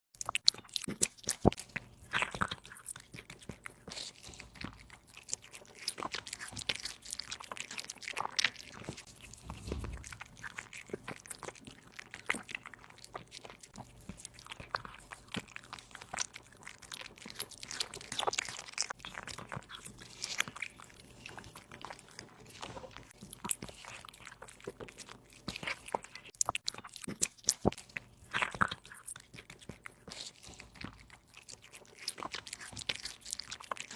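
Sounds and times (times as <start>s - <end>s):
kitten chewing meat: 0.2s - 33.9s
low thump: 9.2s - 10.3s.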